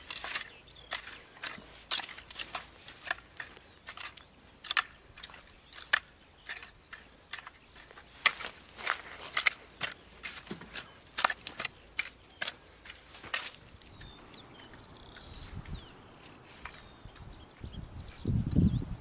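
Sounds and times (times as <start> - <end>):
faint bird chirps: 10.8 - 19.0.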